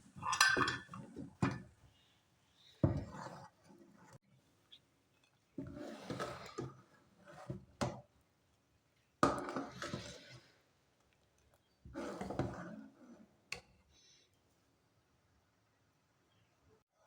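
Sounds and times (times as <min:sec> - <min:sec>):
utensils clattering against pot: 0:00.0 - 0:01.7.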